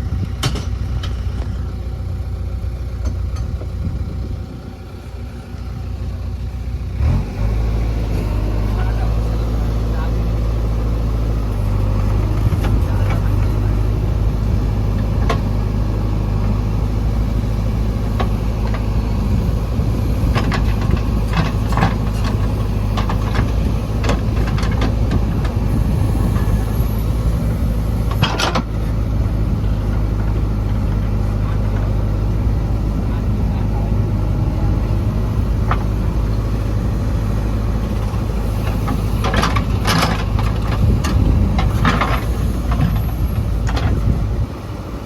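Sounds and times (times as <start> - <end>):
diesel engine under load: 0.0 - 45.0
metal clanks and knocks: 20.2 - 25.6, 28.1 - 28.8, 38.0 - 44.0.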